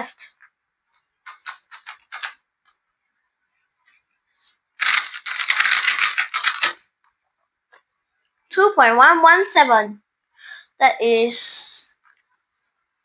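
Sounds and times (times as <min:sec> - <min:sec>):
puzzle cube clicking and rattling: 0:01.3 - 0:02.4, 0:04.8 - 0:06.8.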